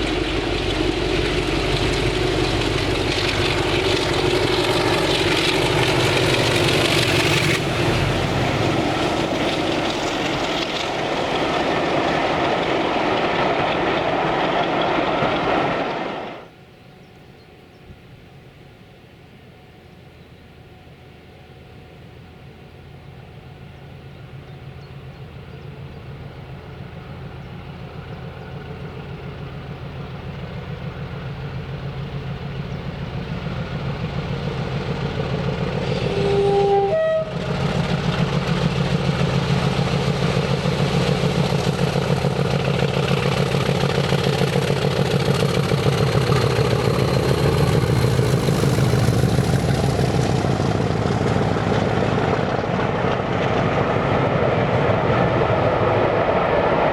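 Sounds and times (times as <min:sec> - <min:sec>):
diesel locomotive engine: 0:00.0 - 0:56.9
two-note train horn blast: 0:35.7 - 0:38.0.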